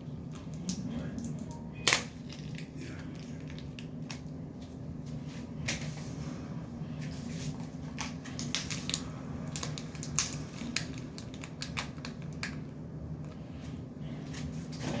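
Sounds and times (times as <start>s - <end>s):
steady low hum: 0.0s - 15.0s
plastic packaging crinkling: 1.3s - 4.3s, 7.5s - 12.8s.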